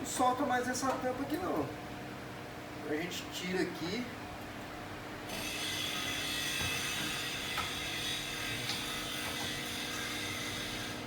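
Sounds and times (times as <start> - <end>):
small electric motor whine: 5.3 - 11.0.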